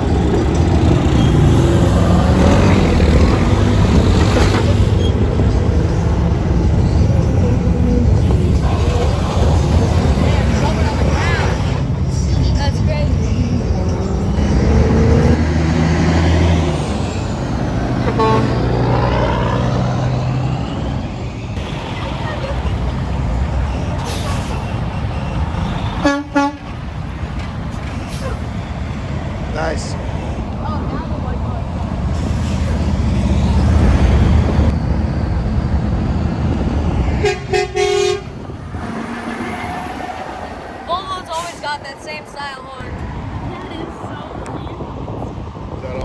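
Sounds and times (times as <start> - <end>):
semi truck passing: 0.0 - 45.8
truck horn blasts: 18.0 - 19.0, 25.7 - 26.7, 37.1 - 39.6.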